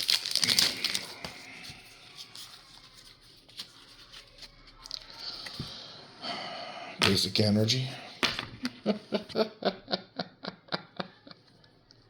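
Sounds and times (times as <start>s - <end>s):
trading cards rustling: 0.0s - 5.8s.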